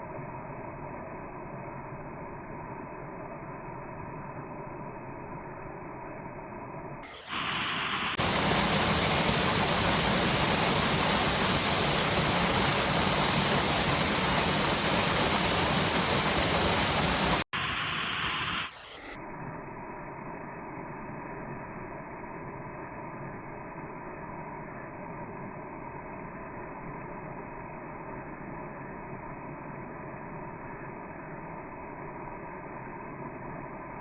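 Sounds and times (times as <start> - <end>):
waterfall rushing: 7.2 - 18.8.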